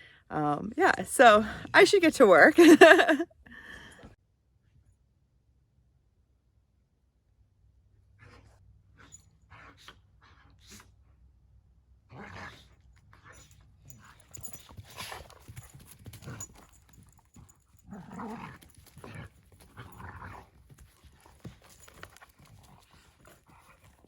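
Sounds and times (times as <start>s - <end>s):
dog panting and snuffling: 14.1s - 17.0s, 18.1s - 24.0s.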